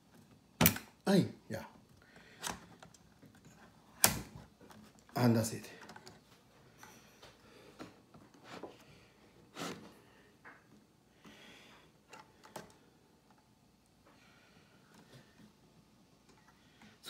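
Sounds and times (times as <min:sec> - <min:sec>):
light clicks and rustles: 0:01.7 - 0:08.9.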